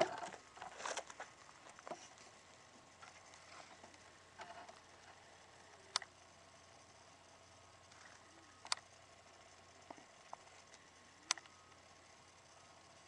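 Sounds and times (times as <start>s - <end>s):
faint rustling: 0.0s - 5.3s.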